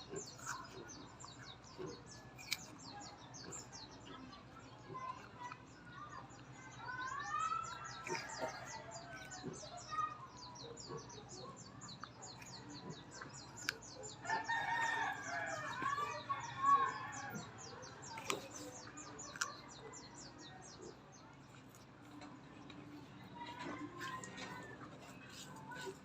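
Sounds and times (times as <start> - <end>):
chickens calling: 7.4 - 21.0
drawn-out crow-like calls: 14.2 - 17.3.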